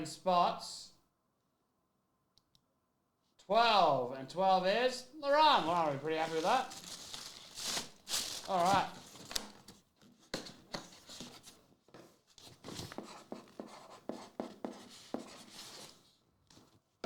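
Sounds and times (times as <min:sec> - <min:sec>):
trading cards being handled: 0:05.4 - 0:09.8.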